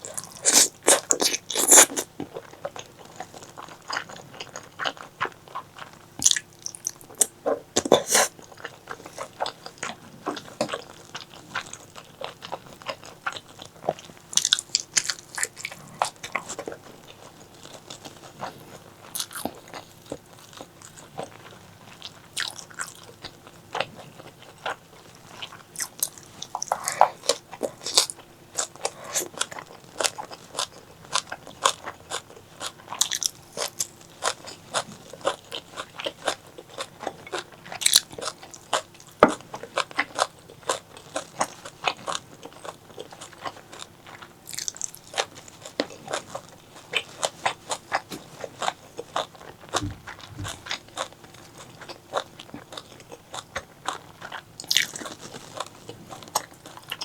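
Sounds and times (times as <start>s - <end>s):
close chewing with crunchy bites: 0.0s - 57.0s
wet mouth clicks: 49.8s - 50.7s.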